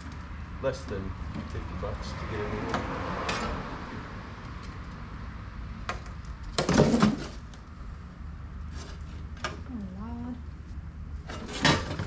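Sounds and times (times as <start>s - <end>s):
parts clattering and knocking: 5.8s - 7.7s, 11.2s - 12.0s.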